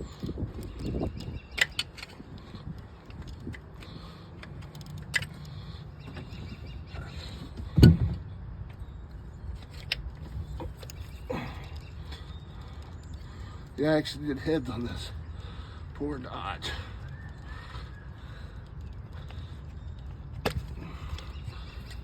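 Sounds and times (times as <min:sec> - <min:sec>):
tools and metal parts clicking: 0:00.0 - 0:06.4
loud thump: 0:07.8 - 0:08.2.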